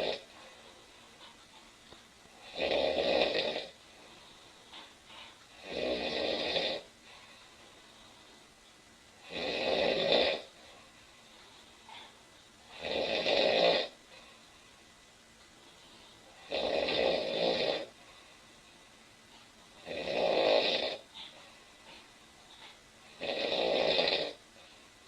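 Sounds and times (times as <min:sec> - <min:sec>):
woman snoring loudly: 0:00.0 - 0:00.3, 0:02.4 - 0:03.8, 0:05.6 - 0:06.9, 0:09.2 - 0:10.5, 0:12.7 - 0:14.0, 0:16.4 - 0:18.0, 0:19.8 - 0:21.1, 0:23.1 - 0:24.4.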